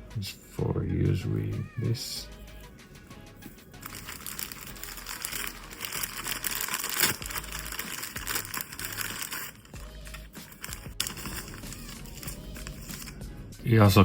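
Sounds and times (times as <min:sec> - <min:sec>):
plastic packaging crinkling: 0:03.8 - 0:13.2.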